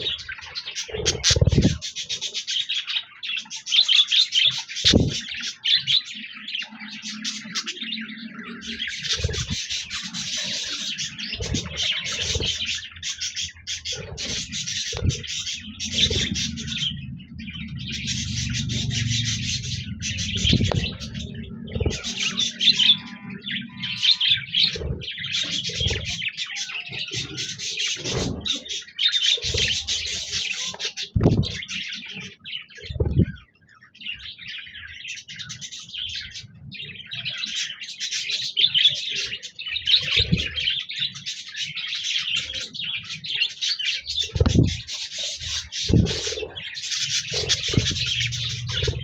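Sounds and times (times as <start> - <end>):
budgerigars chirping and warbling: 0.0 - 49.0
low rumble: 14.2 - 22.9, 47.3 - 49.0.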